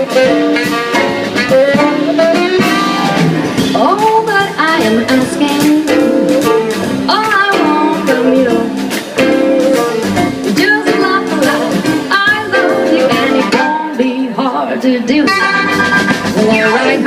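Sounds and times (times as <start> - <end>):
jazz band playing swing: 0.0 - 17.0
sliding melodic lead line: 0.0 - 17.0
person singing: 7.1 - 9.3, 10.5 - 17.0.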